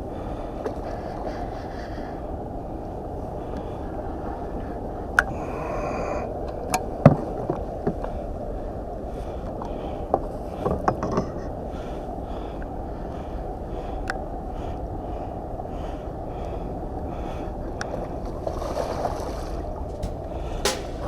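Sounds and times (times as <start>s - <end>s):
wind: 9.2s - 21.0s
sharp knocks and clicks: 20.0s - 21.0s.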